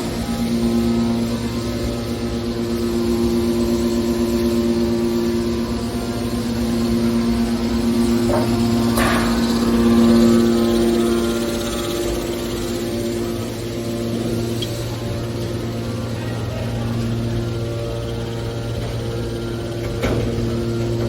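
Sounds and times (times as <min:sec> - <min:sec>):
hydraulic baler humming: 0:00.0 - 0:21.0.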